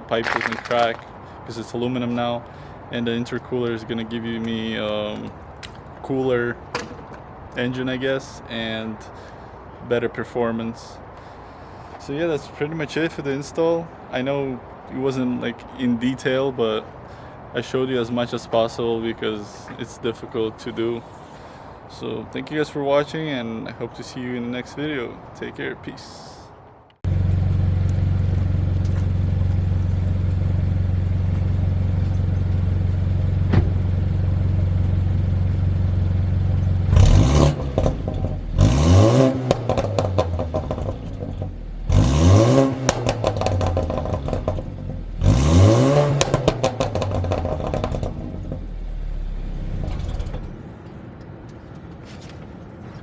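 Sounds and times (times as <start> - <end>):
car engine idling and revving: 27.0 - 50.9.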